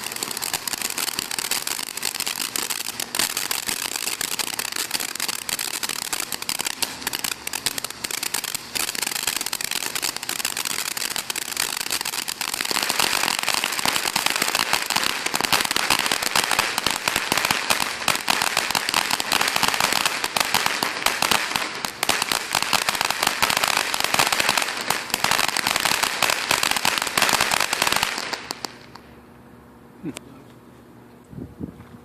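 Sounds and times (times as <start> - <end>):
fountain firework crackling: 0.0 - 29.1.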